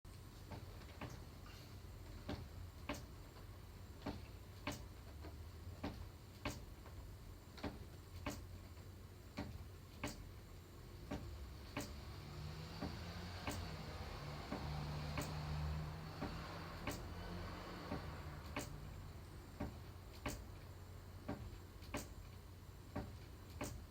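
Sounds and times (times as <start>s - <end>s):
low steady hum: 0.1s - 23.9s
wooden rocking chair creaking: 11.0s - 23.9s.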